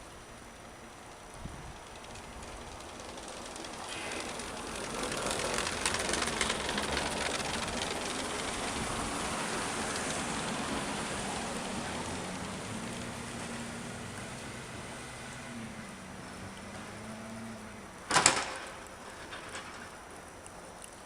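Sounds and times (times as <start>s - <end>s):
low engine hum: 0.0s - 20.9s
clatter: 1.5s - 13.1s, 16.5s - 21.0s
tyre hiss on slush: 3.9s - 5.5s.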